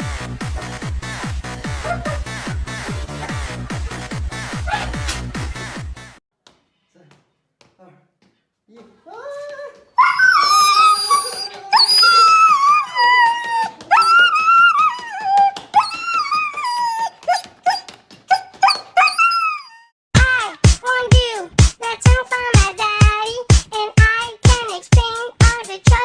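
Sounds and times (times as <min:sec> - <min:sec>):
dog whining and howling: 0:01.7 - 0:02.3, 0:04.6 - 0:05.0, 0:10.0 - 0:19.9.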